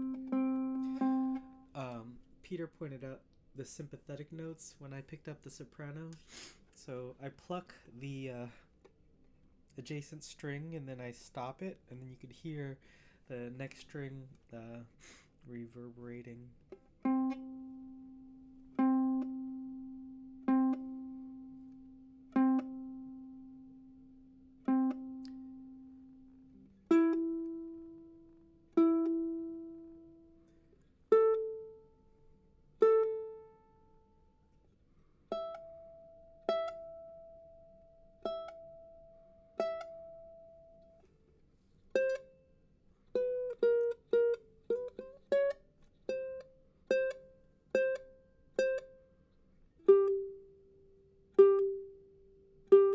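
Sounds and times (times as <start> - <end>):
plucked ukulele notes: 0.0 - 3.0, 16.2 - 34.4, 35.3 - 41.1, 41.9 - 42.4, 43.1 - 49.1, 49.8 - 52.9.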